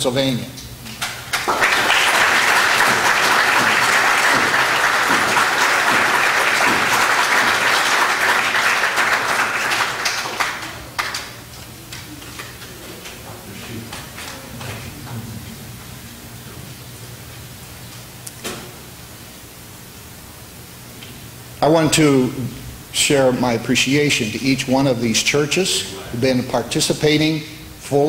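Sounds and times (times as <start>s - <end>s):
congregation applauding: 1.0s - 14.6s.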